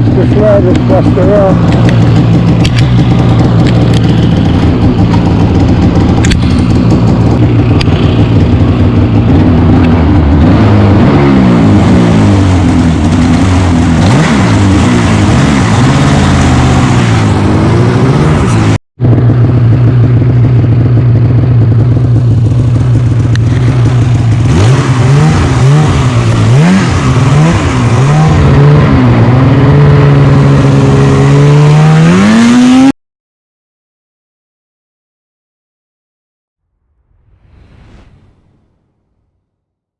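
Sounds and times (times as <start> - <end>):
snowmobile engine revving: 0.0 - 19.6, 23.5 - 32.9.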